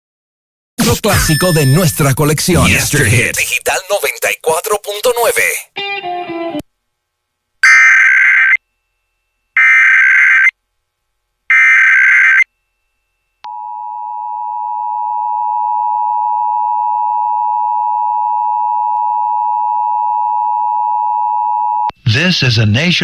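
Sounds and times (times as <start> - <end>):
two-tone attention signal: 0.8 - 2.8
warbling digital data bursts: 1.0 - 3.4.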